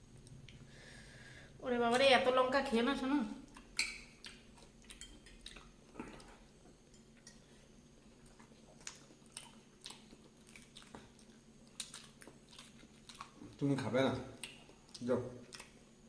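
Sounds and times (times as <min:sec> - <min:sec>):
person chewing food: 0:03.5 - 0:16.0.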